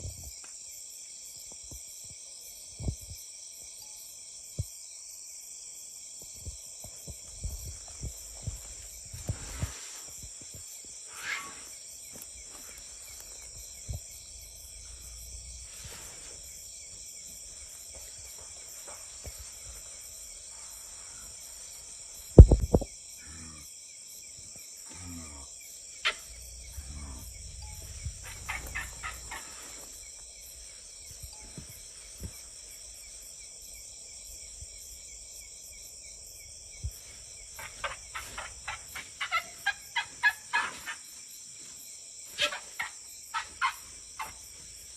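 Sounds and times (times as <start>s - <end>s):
insects chorus: 0.0s - 44.9s
loud thump: 22.4s - 22.9s
short chirping calls: 26.1s - 30.0s.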